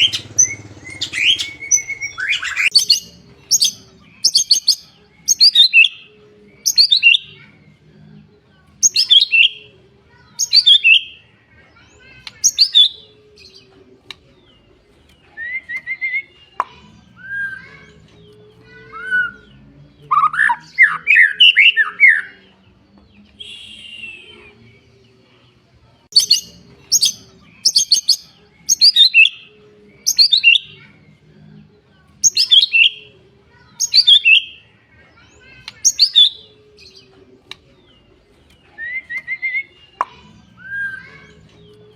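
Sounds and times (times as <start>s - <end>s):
bird whistling and warbling: 0.0s - 7.4s, 23.4s - 24.6s, 38.8s - 41.4s
songbird chirping: 0.0s - 41.9s.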